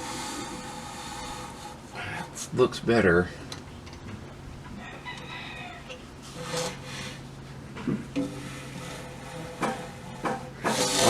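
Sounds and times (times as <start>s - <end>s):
steady low hum: 0.0s - 11.0s
knocks and rubbing on bicycle frame: 7.8s - 11.0s.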